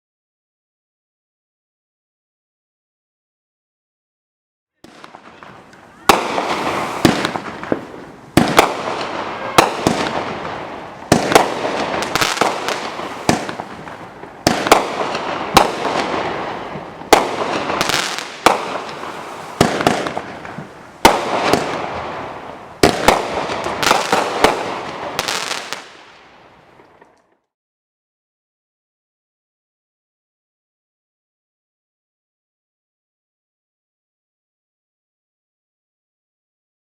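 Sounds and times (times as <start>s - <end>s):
firework bangs: 4.8s - 27.1s
firework crackling: 4.8s - 27.2s.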